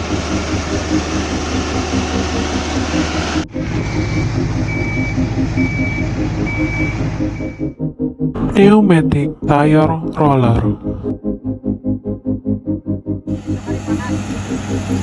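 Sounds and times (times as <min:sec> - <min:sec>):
diesel engine throbbing: 0:00.0 - 0:15.0
reversing alarm beeping: 0:03.2 - 0:07.8.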